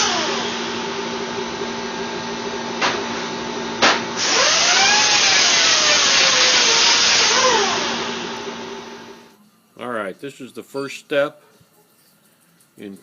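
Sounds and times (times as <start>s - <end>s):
power tool whirring: 0.0s - 1.2s, 4.2s - 9.3s
steady motor hum: 0.0s - 13.0s.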